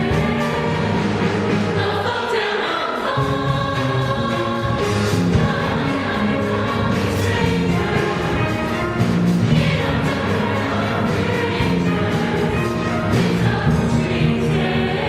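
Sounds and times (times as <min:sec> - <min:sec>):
choir singing held notes: 0:00.0 - 0:15.0
musical accompaniment: 0:00.0 - 0:15.0.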